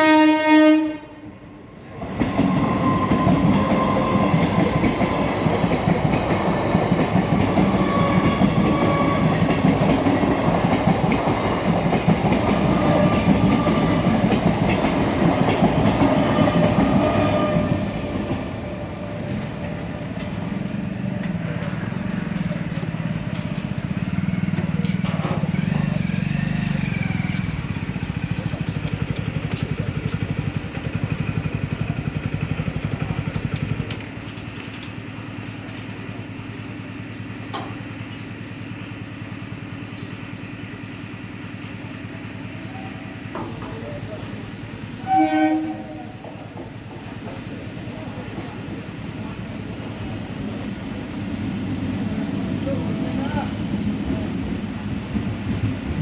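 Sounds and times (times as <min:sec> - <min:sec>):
train horn blast: 0:00.0 - 0:01.4, 0:16.2 - 0:18.2, 0:45.0 - 0:46.4
train wheels on rails: 0:01.7 - 0:56.0.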